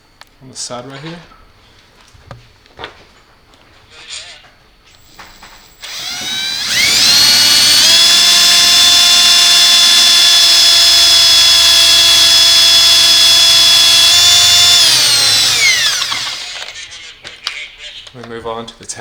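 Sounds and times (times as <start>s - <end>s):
electric drill whine: 5.0s - 16.9s.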